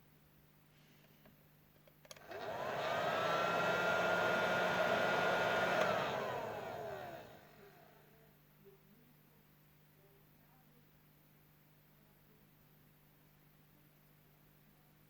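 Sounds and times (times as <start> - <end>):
hot-air blower switch click: 2.1 - 7.3
hot-air blower whine: 2.2 - 8.0.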